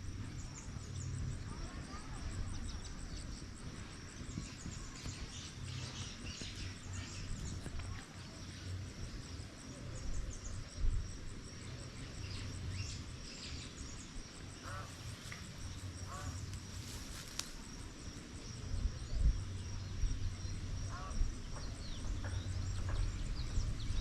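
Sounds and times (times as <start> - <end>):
wind rumble on microphone: 0.0 - 24.0
small birds chirping: 0.3 - 16.3.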